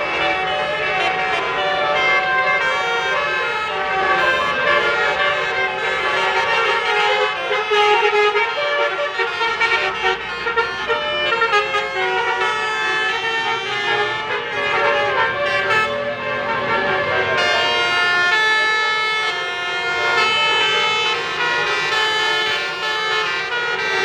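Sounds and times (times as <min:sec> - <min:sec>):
bus horn playing a tune: 0:00.0 - 0:24.0.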